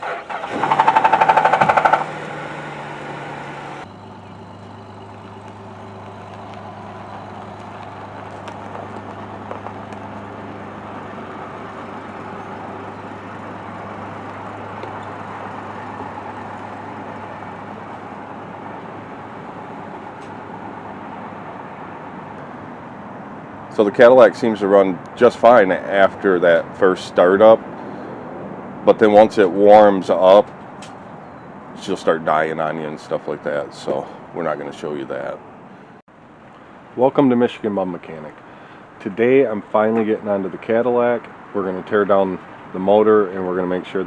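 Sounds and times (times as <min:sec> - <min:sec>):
car engine starting with rattle: 0:00.0 - 0:20.5
car engine idling: 0:00.0 - 0:23.2.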